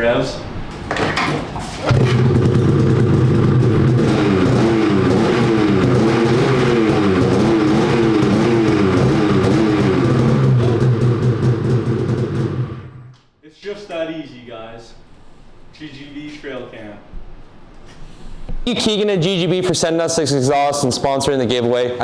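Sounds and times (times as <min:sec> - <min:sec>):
snowmobile engine revving: 0:01.9 - 0:13.1.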